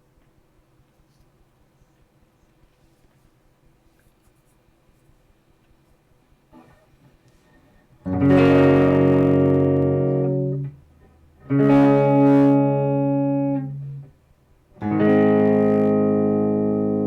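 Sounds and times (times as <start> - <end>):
clean electric guitar chords: 8.0 - 14.1, 14.8 - 17.0.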